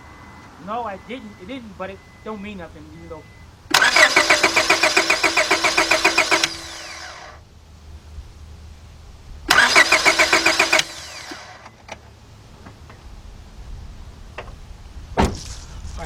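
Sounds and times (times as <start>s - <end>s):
starter motor cranking engine: 3.7s - 7.4s, 9.5s - 11.6s.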